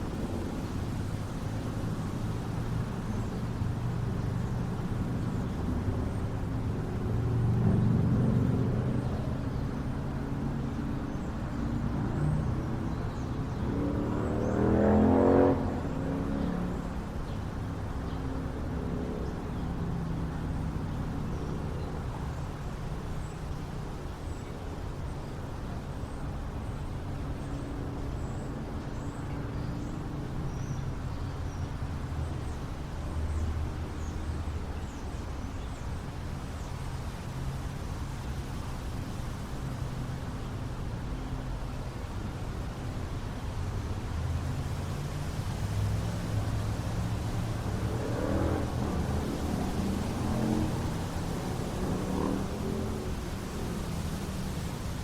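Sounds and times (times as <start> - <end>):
distant traffic: 0.0 - 55.0
wind: 0.0 - 55.0
vehicle accelerating past: 11.8 - 17.0, 44.1 - 55.0
car passing: 11.8 - 20.7, 36.9 - 55.0.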